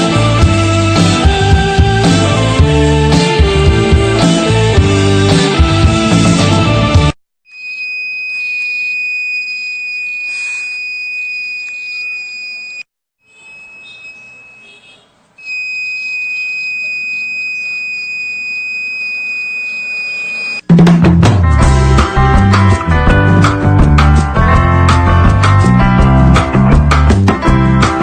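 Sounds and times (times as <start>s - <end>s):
fire alarm buzzer tone: 7.5s - 20.6s.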